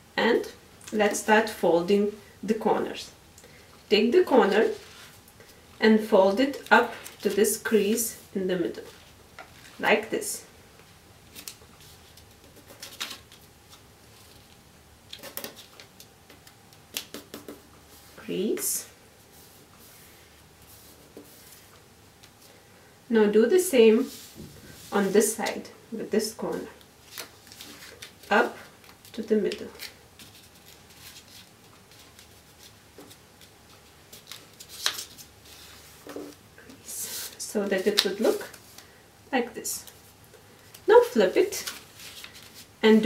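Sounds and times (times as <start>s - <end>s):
paper rustling and crackling: 4.5s - 5.2s, 8.8s - 9.8s, 11.3s - 17.6s, 27.0s - 36.4s, 41.5s - 42.8s.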